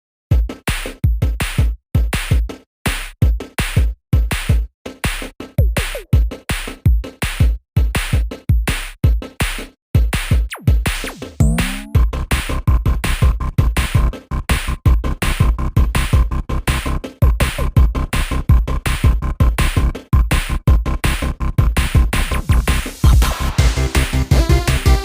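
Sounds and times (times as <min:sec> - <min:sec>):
electronic music with heavy bass: 0:10.5 - 0:12.2, 0:15.3 - 0:25.0.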